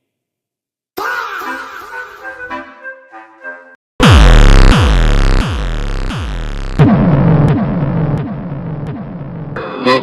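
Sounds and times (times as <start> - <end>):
electronic music with falling bass: 4.0 - 10.0.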